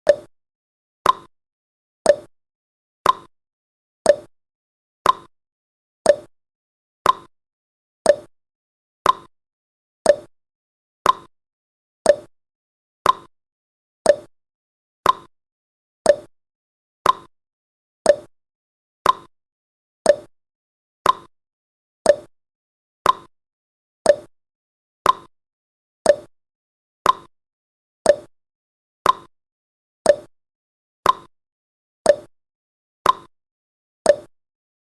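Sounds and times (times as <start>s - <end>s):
timer ticking clicks: 0.0s - 0.3s, 1.0s - 1.3s, 2.0s - 2.3s, 3.0s - 3.3s, 4.0s - 4.3s, 5.0s - 5.3s, 6.0s - 6.3s, 7.0s - 7.3s, 8.0s - 8.3s, 9.0s - 9.3s, 10.0s - 10.3s, 11.0s - 11.3s, 12.0s - 12.3s, 13.0s - 13.3s, 14.0s - 14.3s, 15.0s - 15.3s, 16.0s - 16.3s, 17.0s - 17.3s, 18.0s - 18.4s, 19.0s - 19.3s, 20.0s - 20.3s, 21.0s - 21.3s, 22.0s - 22.3s, 23.0s - 23.3s, 24.0s - 24.3s, 25.0s - 25.3s, 26.0s - 26.3s, 27.0s - 27.3s, 28.0s - 28.4s, 29.0s - 29.3s, 30.0s - 30.4s, 31.0s - 31.3s, 32.0s - 32.4s, 33.0s - 33.3s, 34.0s - 34.4s.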